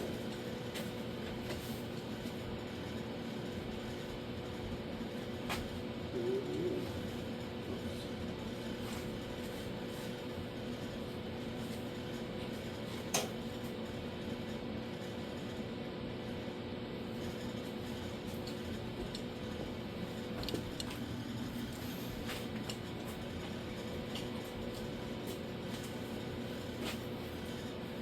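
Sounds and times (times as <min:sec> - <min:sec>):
steady electrical hum: 0:00.0 - 0:28.0.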